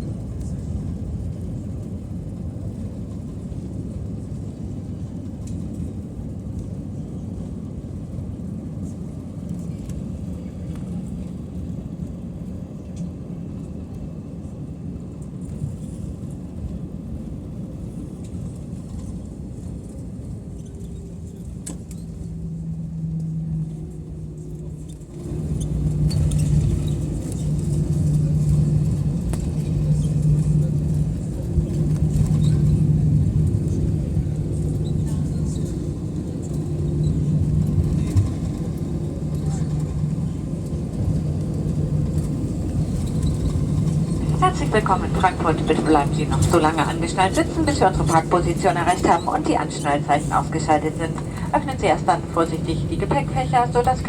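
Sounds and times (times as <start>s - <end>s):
aircraft cabin rumble: 0.0s - 54.0s
low humming drone: 21.7s - 54.0s.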